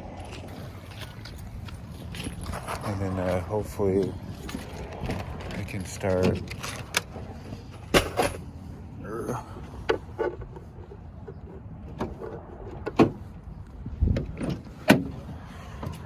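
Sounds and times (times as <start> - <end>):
low rumble: 0.0 - 8.0
faint mumbling: 9.0 - 9.7.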